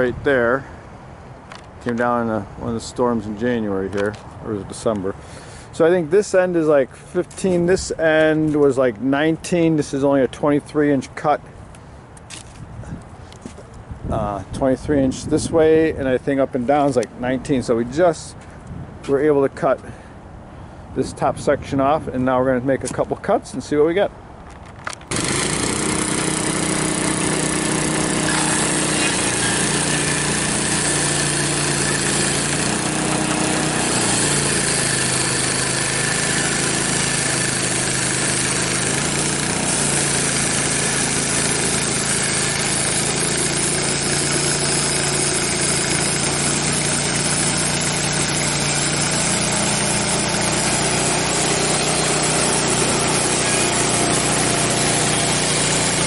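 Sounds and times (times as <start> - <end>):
band blade sawing log: 25.1 - 56.0
gas engine running: 25.1 - 56.0.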